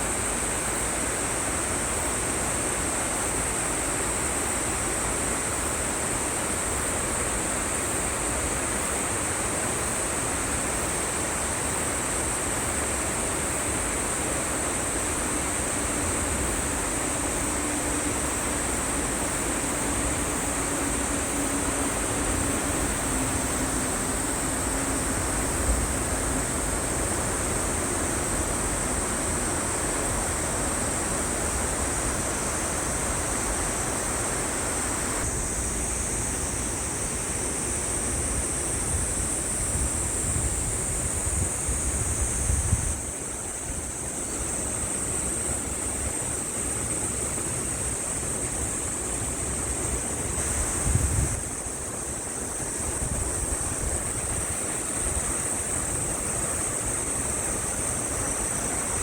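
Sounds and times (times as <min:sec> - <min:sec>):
stream rushing over rocks: 0:00.0 - 0:42.2, 0:42.9 - 0:59.0
wind buffeting microphone: 0:50.5 - 0:51.6.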